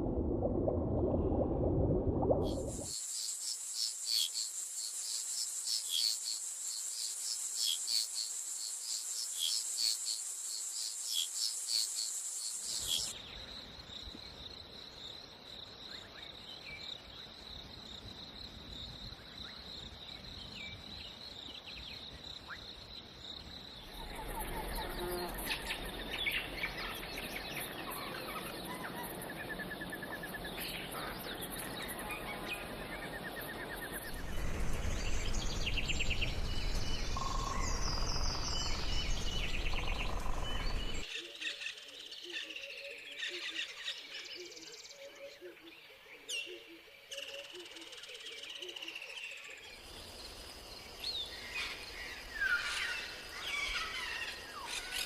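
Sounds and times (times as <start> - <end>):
insect chirps: 2.4 - 41.1, 47.4 - 55.0
high insect buzz: 2.6 - 13.1, 24.7 - 25.8
bird trill: 35.0 - 41.0.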